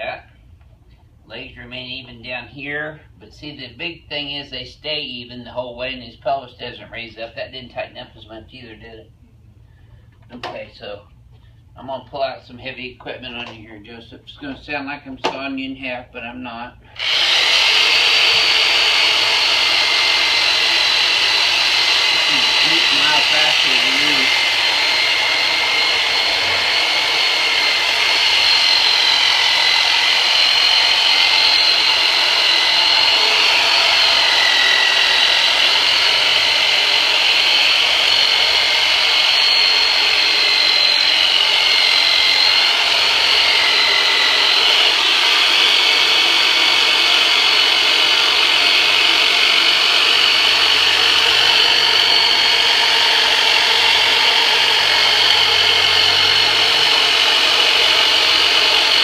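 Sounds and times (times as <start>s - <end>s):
jigsaw whining: 16.9s - 59.0s.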